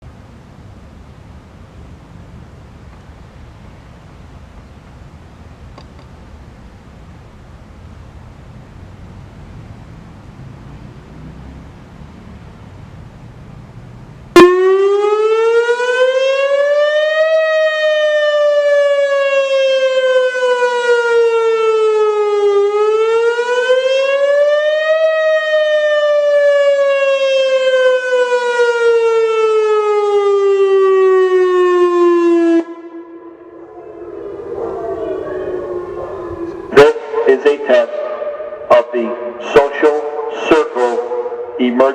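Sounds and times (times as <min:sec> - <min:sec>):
warning siren wailing: 0:14.4 - 0:41.9.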